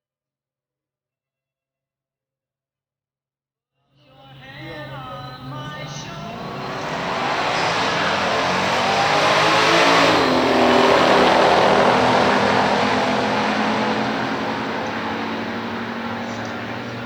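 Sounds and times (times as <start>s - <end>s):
car engine passing at full throttle: 5.4s - 17.0s.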